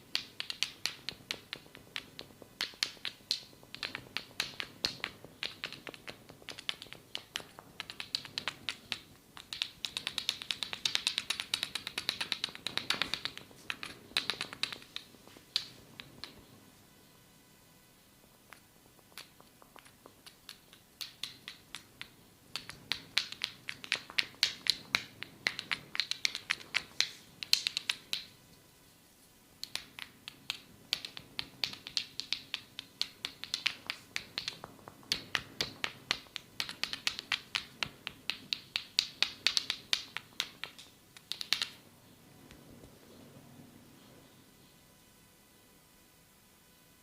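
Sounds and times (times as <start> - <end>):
sharp snapping clicks: 0.1 - 16.4, 18.5 - 28.4, 29.6 - 41.8.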